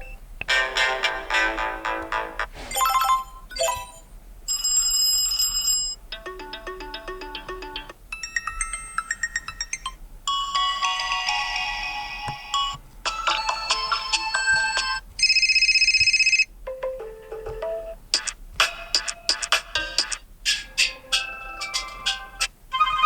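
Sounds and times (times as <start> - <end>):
smartphone ringtone melodies: 2.7 - 18.0, 21.3 - 23.0.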